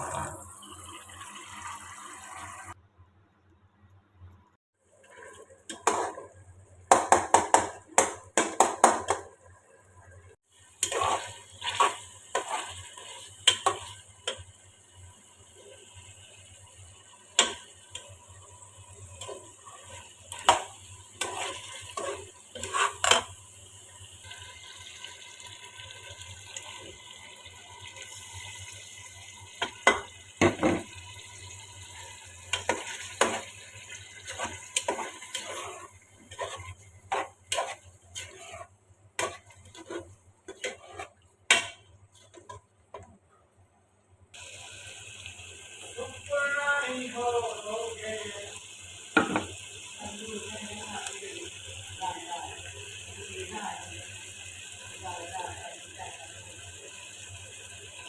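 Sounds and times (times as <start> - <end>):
metal utensil scraping cooking pot: 10.8 - 14.4, 19.2 - 23.4, 32.5 - 42.7.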